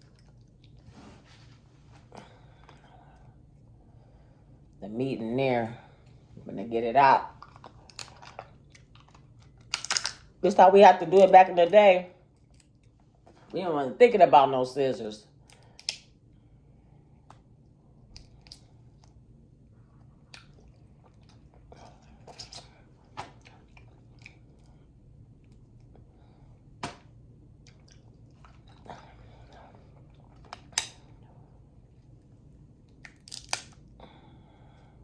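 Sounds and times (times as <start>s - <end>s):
chewing and crunching: 0.0s - 1.0s, 7.3s - 10.3s, 17.2s - 26.1s, 27.4s - 34.0s
crab shell cracking: 7.4s - 10.3s, 32.9s - 33.9s.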